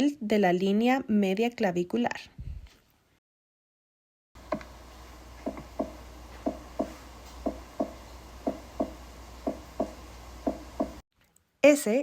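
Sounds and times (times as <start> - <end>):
heartbeat lub-dub: 5.4 - 11.0.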